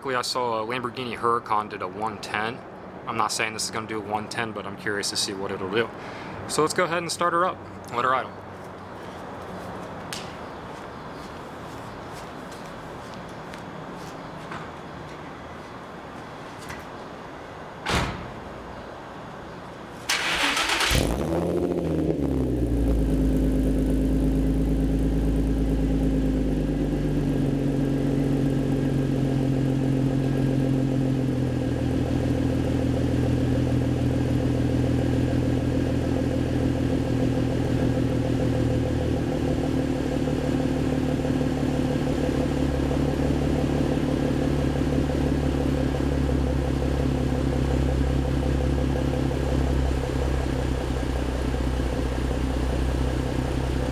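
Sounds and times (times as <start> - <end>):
car engine starting and idling: 20.0 - 53.9.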